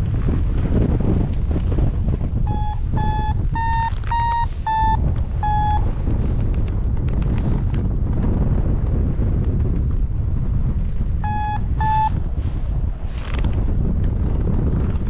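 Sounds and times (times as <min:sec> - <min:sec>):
wind rushing over microphone: 0:00.0 - 0:15.0
variometer beeping: 0:02.5 - 0:05.9, 0:11.2 - 0:12.2.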